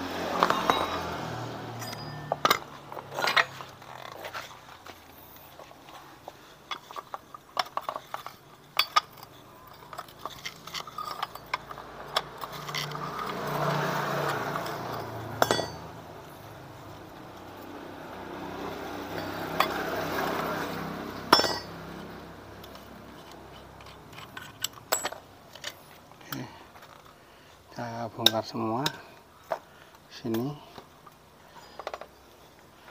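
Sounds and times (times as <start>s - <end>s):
metal tools clinking and tapping: 0.4s - 4.4s, 6.6s - 16.4s, 21.3s - 27.2s.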